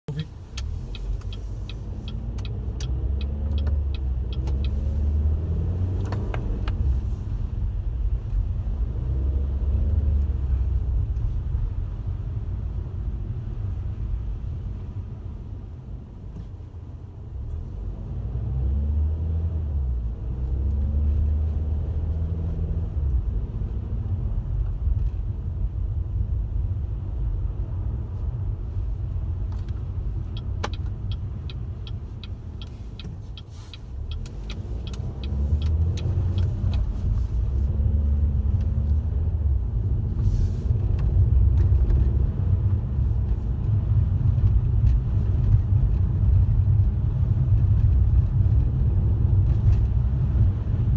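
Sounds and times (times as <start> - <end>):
car engine and road rumble: 0.0 - 50.9
rapid sharp ticks: 29.6 - 37.0.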